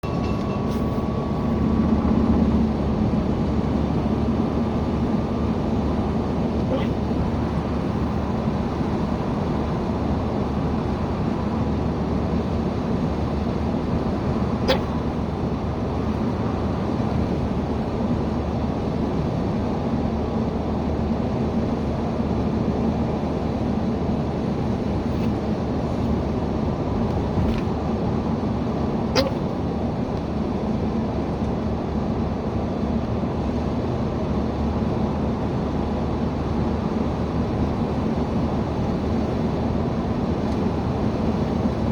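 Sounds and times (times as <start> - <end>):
road and engine noise in car: 0.0 - 41.9
person hiccuping: 6.6 - 7.2, 14.6 - 15.0, 29.2 - 29.5.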